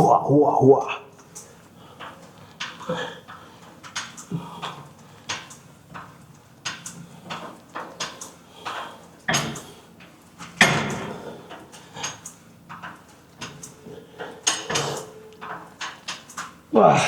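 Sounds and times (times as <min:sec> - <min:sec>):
gym weights clanking: 0:13.5 - 0:16.1.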